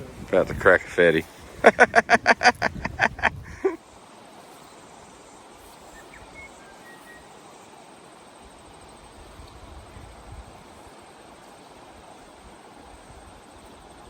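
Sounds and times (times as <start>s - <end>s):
river rushing: 0.0s - 9.2s
faint bird chirps: 4.6s - 7.8s.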